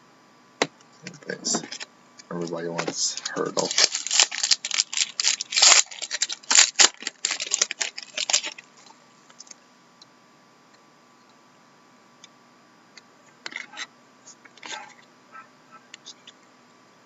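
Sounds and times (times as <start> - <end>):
faint hum: 0.0 - 17.0
card pack wrapper crinkling: 1.5 - 8.7.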